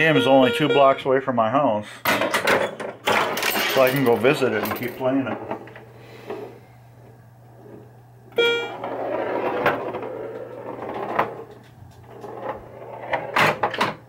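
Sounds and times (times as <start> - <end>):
steady electrical hum: 0.0 - 14.0
pinball rolling across playfield: 2.2 - 14.0
short pitched tone: 8.4 - 8.8.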